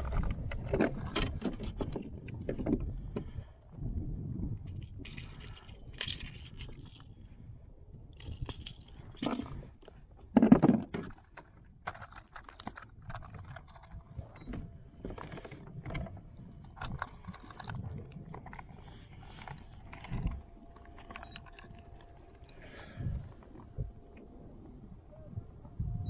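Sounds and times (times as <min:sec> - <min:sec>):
fishing gear clinking and rattling: 0:00.2 - 0:02.0, 0:04.7 - 0:07.1, 0:08.2 - 0:23.8.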